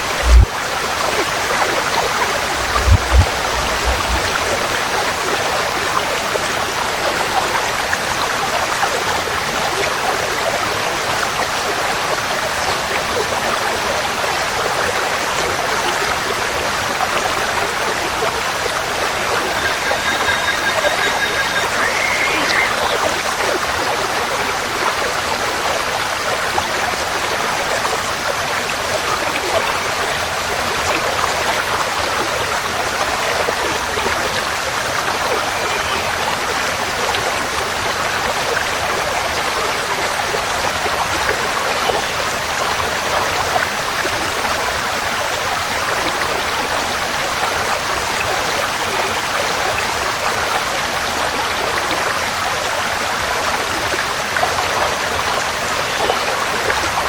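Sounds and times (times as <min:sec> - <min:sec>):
stream flowing over rocks: 0:00.0 - 0:57.0.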